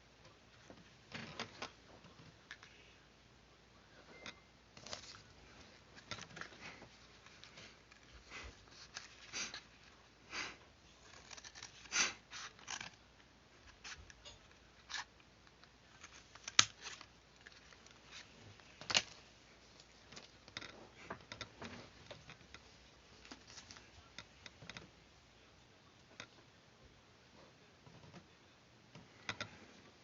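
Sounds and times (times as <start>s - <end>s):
paper rustling: 4.8s - 10.0s, 10.9s - 13.0s.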